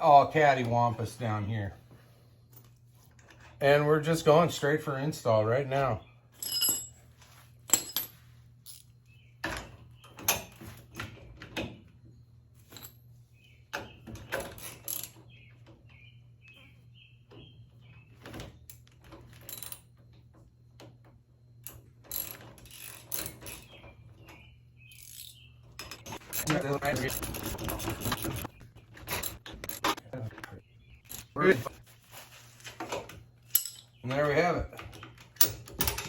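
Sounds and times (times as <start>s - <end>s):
metal clicks and clanks: 25.0s - 31.4s, 32.8s - 36.0s.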